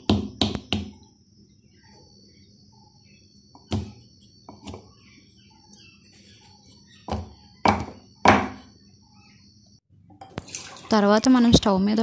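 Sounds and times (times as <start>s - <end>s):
pestle pounding in mortar: 0.0s - 0.9s.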